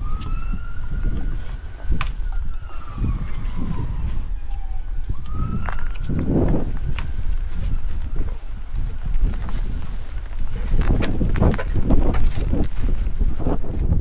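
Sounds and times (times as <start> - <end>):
siren wailing: 0.0 - 10.7
wind rumbling on microphone: 0.0 - 14.0.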